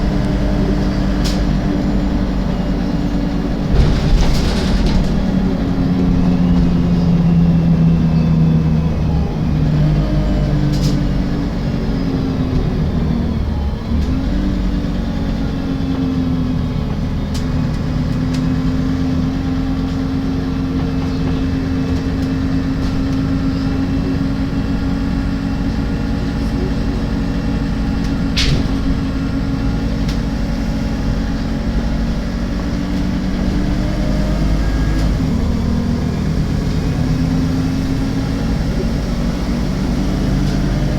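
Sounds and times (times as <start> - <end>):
bus engine running: 0.0 - 40.9.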